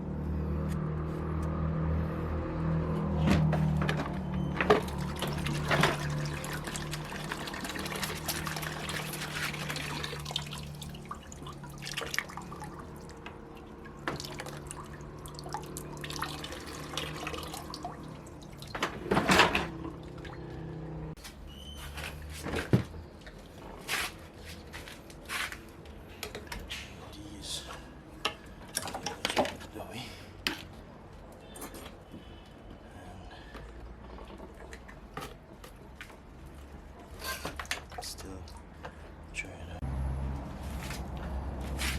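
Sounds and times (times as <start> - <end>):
coolant draining and dripping: 3.8 - 20.6, 33.4 - 39.1.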